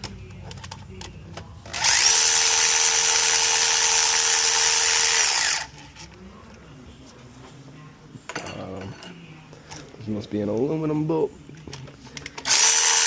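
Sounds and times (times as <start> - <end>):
cordless power tool whine: 1.8 - 5.7, 12.4 - 13.0.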